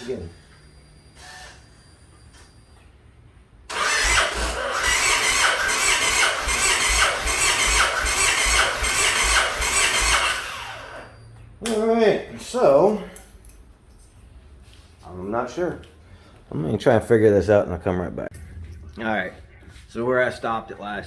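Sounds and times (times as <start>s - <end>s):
motorcycle engine cranking: 3.7s - 10.4s.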